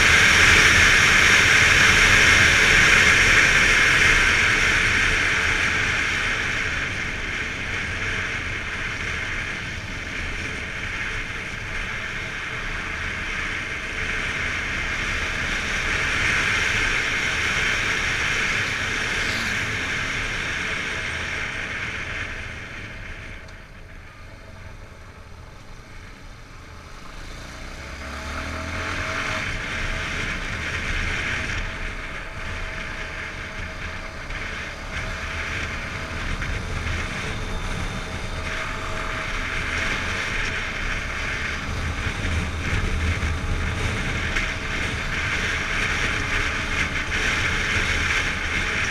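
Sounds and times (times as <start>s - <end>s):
faint motorcycle engine: 0.0s - 48.9s
wind rush over microphone: 28.5s - 48.9s.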